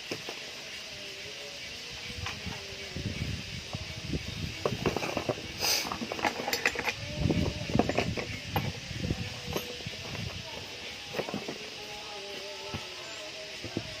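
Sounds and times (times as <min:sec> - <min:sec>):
clicks knocks and rattles: 0:04.6 - 0:07.0.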